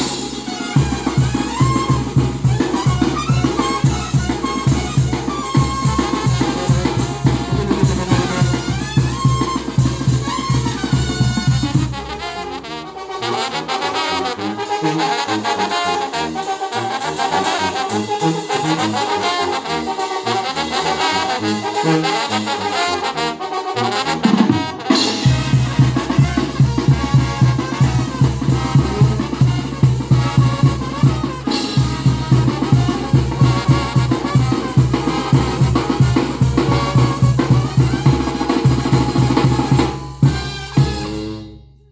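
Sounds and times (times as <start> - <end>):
bass and drum beat: 0.0 - 12.1, 25.1 - 41.2
trumpets and trombones: 0.0 - 41.9.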